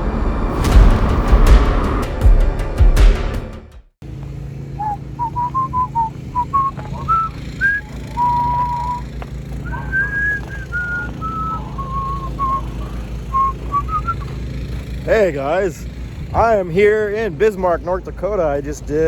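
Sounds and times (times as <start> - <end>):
person whistling a tune: 4.8 - 12.6, 13.3 - 14.3.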